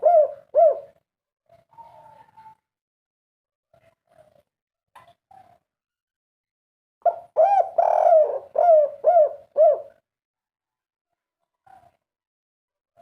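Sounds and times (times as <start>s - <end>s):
dove cooing: 0.0s - 2.6s, 7.0s - 10.0s.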